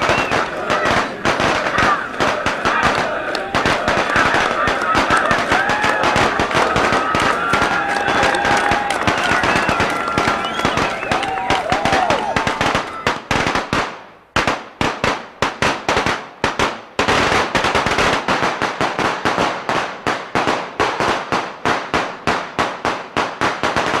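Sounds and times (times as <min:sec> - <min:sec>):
firecrackers banging: 0:00.0 - 0:24.0.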